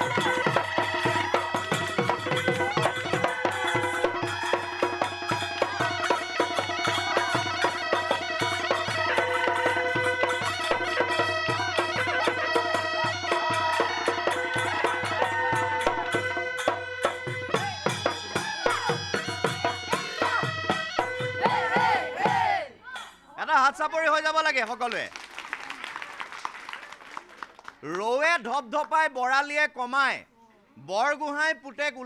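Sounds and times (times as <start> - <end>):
steady drumbeat: 0.0 - 23.1.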